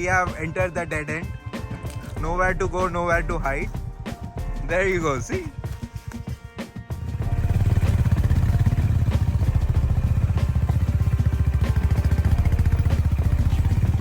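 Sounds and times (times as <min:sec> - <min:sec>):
motorcycle engine thumping: 0:07.0 - 0:14.0.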